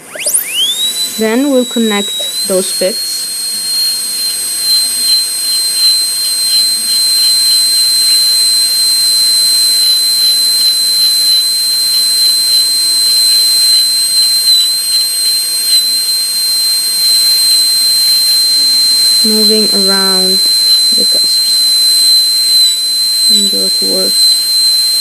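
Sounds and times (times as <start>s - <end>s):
dental drill whistling: 0.0s - 25.0s.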